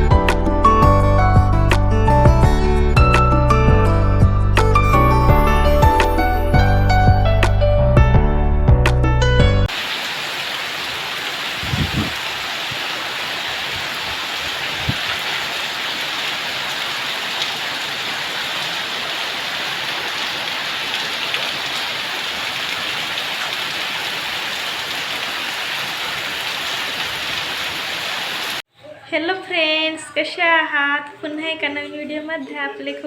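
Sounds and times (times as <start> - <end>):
heavy rain falling: 9.7 - 28.6.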